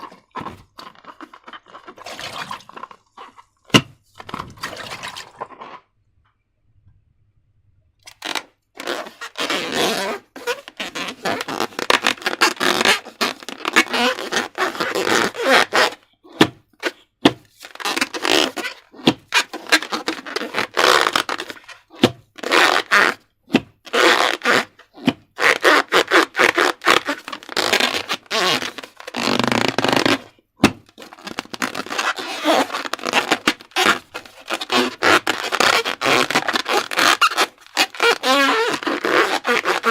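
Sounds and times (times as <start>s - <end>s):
slime squelching and popping: 0.0s - 5.8s.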